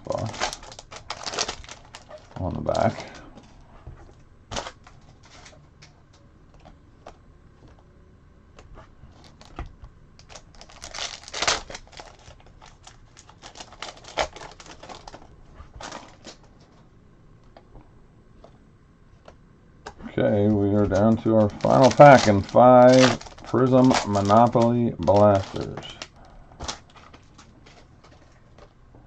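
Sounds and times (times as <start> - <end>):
loud card rustles: 10.2 - 16.8, 20.4 - 28.7.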